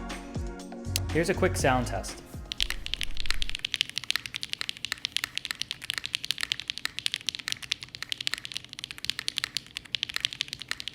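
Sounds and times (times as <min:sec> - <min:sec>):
mechanical keyboard typing: 0:02.5 - 0:10.9.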